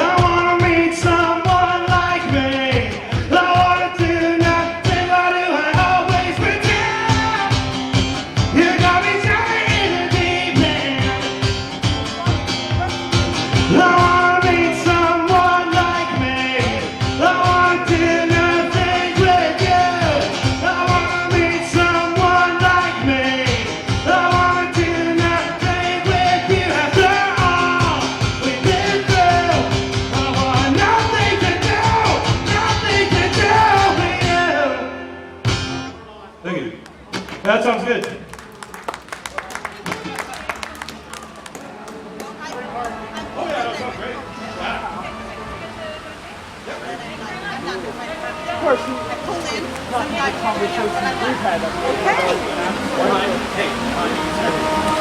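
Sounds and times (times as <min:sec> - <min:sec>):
live country-rock band: 0:00.0 - 0:36.1.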